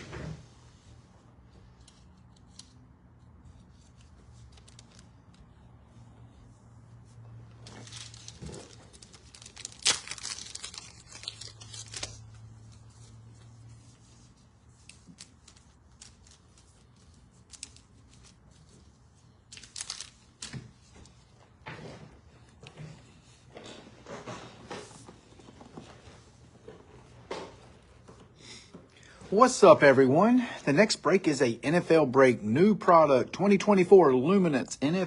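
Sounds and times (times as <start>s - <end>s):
packaging tearing and crinkling: 7.7s - 12.4s, 19.6s - 20.6s.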